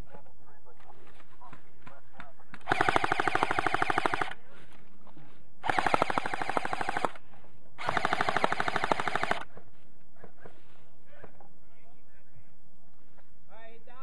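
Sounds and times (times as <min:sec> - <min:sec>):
airsoft gun firing full auto: 0:02.6 - 0:04.4, 0:05.6 - 0:07.2, 0:07.8 - 0:09.5.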